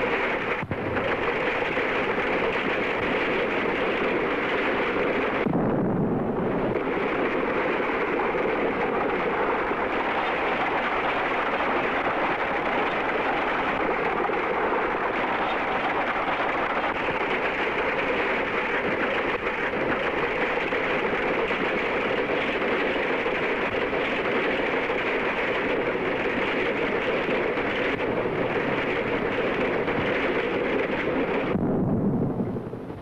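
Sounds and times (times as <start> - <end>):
steady rushing rumbling noise: 0.0 - 33.0.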